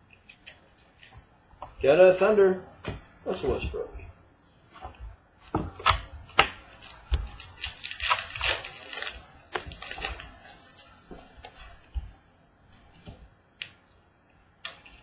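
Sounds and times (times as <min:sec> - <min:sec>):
crisp rustling of cards: 0:06.6 - 0:12.0.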